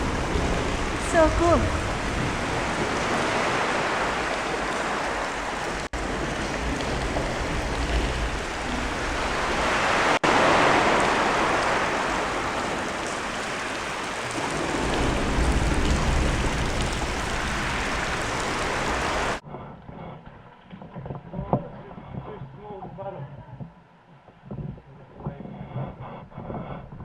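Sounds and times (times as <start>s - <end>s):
deep rumble: 0.0s - 4.6s.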